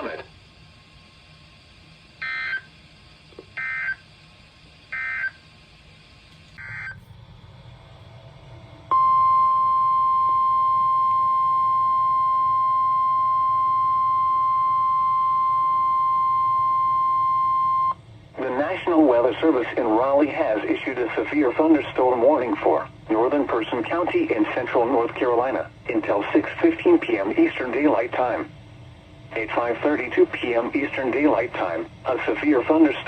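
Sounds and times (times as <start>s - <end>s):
steady alarm tone: 2.2s - 2.8s, 3.6s - 4.1s, 4.9s - 5.4s, 6.6s - 7.1s, 8.8s - 18.0s.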